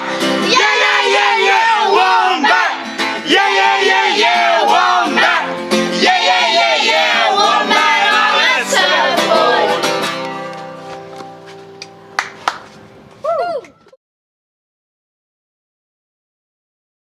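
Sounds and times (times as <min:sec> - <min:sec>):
children singing: 0:00.0 - 0:10.1
guitar accompaniment: 0:00.0 - 0:13.2.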